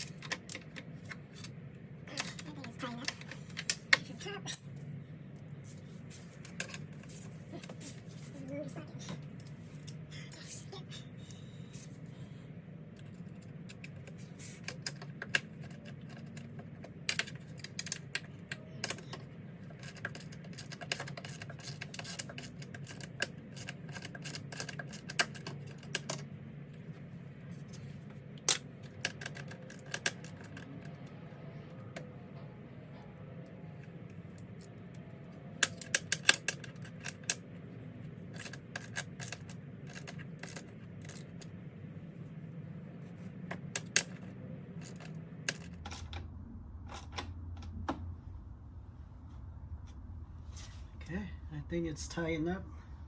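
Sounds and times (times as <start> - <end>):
steady low hum: 0.0 - 53.0
small tools clicking and tapping: 13.0 - 26.3, 28.4 - 31.1, 35.6 - 37.4.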